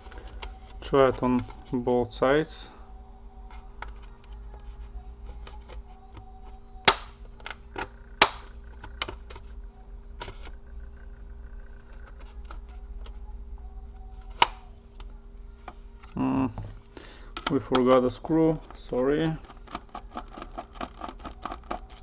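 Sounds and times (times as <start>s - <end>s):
plastic casing snapping: 5.4s - 9.4s, 19.0s - 22.0s
plastic laptop casing clicking: 18.7s - 22.0s.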